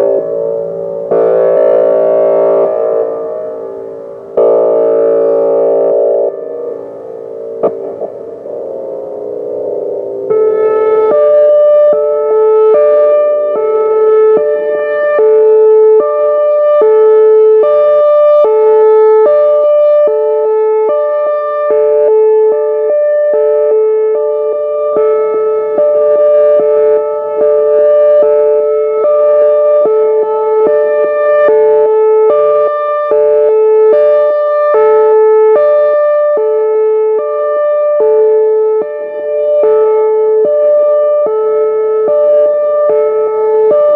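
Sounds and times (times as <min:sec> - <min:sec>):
hi-lo warning siren: 0:00.0 - 0:43.9.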